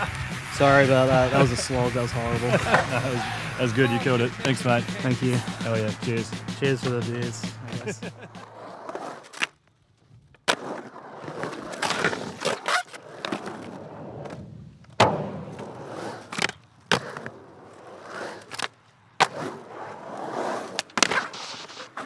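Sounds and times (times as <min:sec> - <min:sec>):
skateboard wheels rolling on concrete: 0:00.0 - 0:22.0
skateboard clacking on ground: 0:18.1 - 0:22.0.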